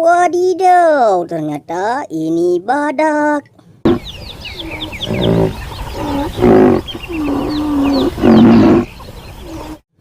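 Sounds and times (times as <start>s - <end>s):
birds chirping: 3.9s - 9.8s
rhinoceros deep calls: 3.9s - 9.8s.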